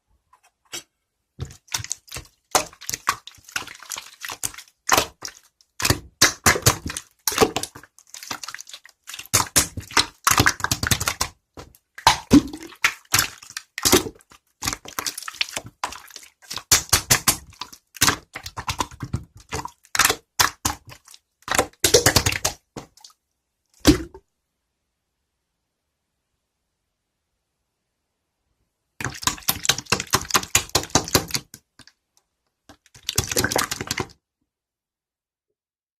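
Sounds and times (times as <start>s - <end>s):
rapid irregular clicks and taps: 29.0s - 34.2s.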